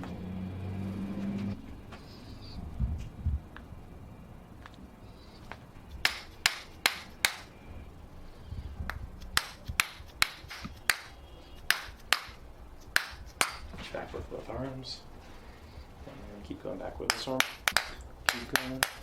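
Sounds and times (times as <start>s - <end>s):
sharp knocks: 6.0s - 7.5s.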